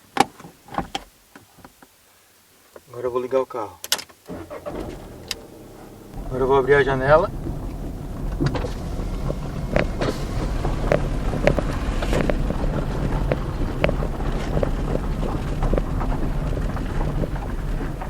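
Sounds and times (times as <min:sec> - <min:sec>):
car engine humming: 0:04.3 - 0:18.0.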